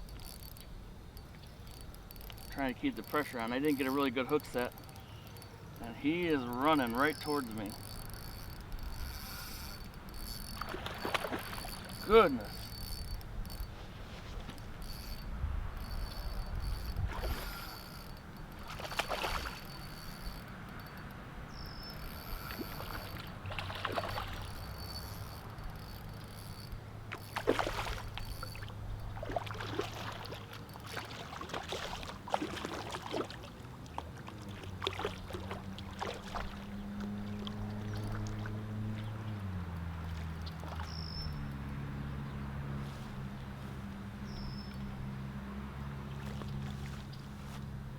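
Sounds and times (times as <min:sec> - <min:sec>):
crickets chirping: 0:00.0 - 0:33.7, 0:34.5 - 0:47.8
low motor hum: 0:00.0 - 0:47.9
fish thrashing: 0:00.1 - 0:13.8, 0:14.4 - 0:21.1, 0:22.0 - 0:38.5
water splashing: 0:10.6 - 0:12.8, 0:17.0 - 0:17.7, 0:18.6 - 0:20.0, 0:22.4 - 0:24.8, 0:27.1 - 0:39.1.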